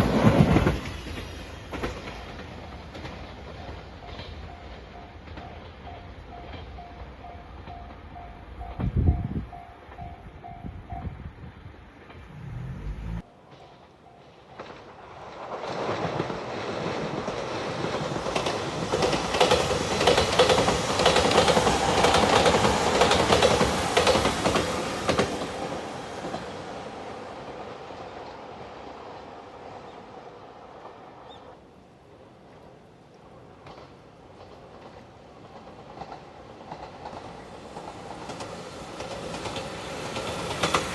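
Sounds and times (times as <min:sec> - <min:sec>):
train wheels clattering over rail joints: 0:00.0 - 0:08.0, 0:13.4 - 0:26.8, 0:33.5 - 0:40.9
level-crossing warning bell: 0:03.6 - 0:11.2.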